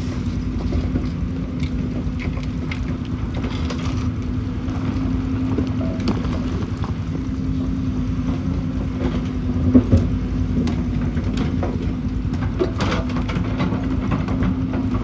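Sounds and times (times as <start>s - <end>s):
diesel engine running: 0.0s - 15.0s
bucket scraping on stones: 3.4s - 7.9s.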